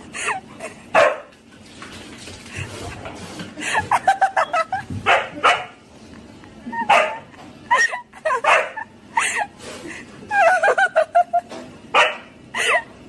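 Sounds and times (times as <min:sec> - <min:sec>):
dog barking and yipping: 0:01.0 - 0:01.3, 0:05.1 - 0:05.7, 0:06.8 - 0:07.2, 0:08.4 - 0:08.8, 0:12.0 - 0:12.3.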